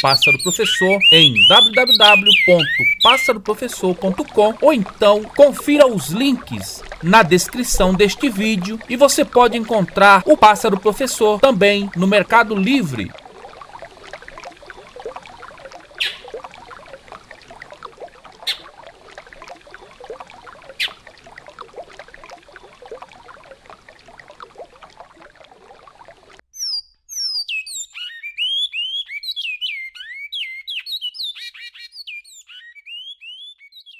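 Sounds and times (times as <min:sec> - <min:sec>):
finch singing whistled notes: 0:00.0 - 0:03.4, 0:12.4 - 0:12.8, 0:26.6 - 0:33.9
river water flowing: 0:00.0 - 0:26.4.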